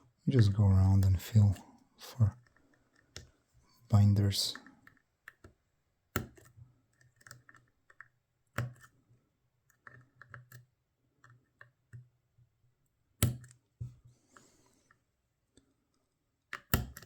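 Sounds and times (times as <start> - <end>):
lock picking metallic clicks: 16.5 - 17.0.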